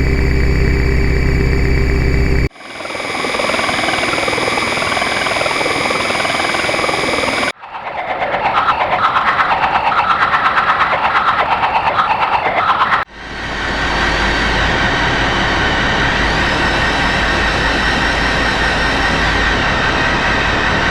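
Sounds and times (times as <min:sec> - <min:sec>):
electronic drone noise: 0:00.0 - 0:10.1
harsh pulsing noise: 0:00.0 - 0:20.9.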